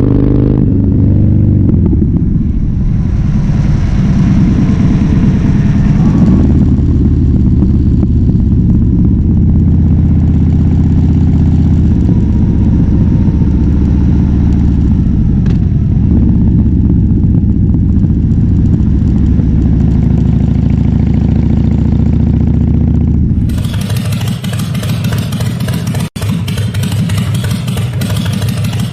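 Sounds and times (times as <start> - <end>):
thinner brighter engine sound: 0.0 - 17.7
motorcycle engine running: 0.0 - 28.9.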